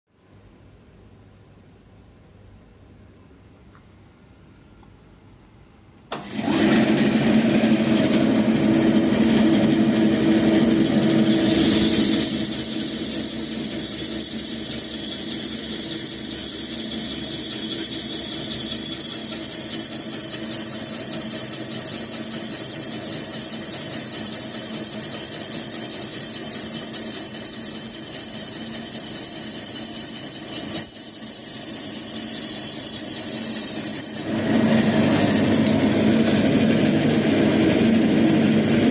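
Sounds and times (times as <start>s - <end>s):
saw motor hum: 6.2s - 19.6s, 32.3s - 38.9s
bandsaw cutting metal whine: 6.2s - 38.9s.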